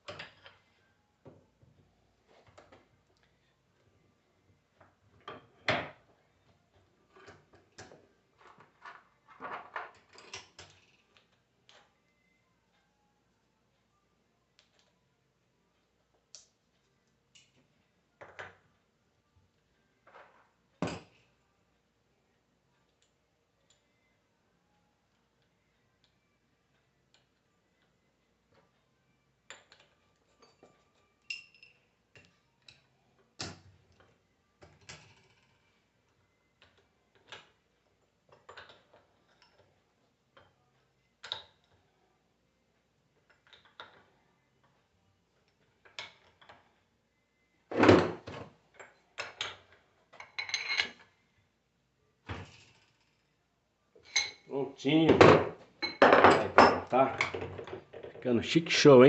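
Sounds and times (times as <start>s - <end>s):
metal parts and tools clinking: 29.5s - 32.9s, 38.3s - 39.8s, 48.8s - 51.1s, 54.0s - 54.5s.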